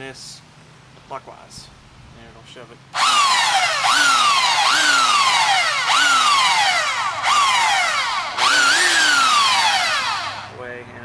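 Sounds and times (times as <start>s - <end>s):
belt sander whining: 3.0s - 10.6s.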